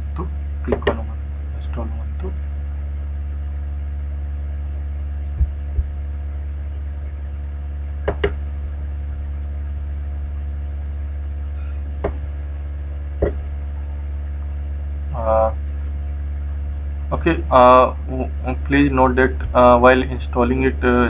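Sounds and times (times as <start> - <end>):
electrical mains hum: 0.0 - 21.0
computer mouse clicks: 8.1 - 8.4.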